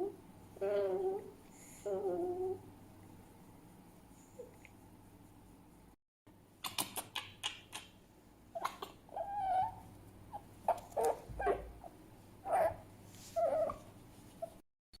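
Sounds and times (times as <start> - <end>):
fox whine: 8.6 - 14.6
fox yips and whimpers: 8.6 - 14.6.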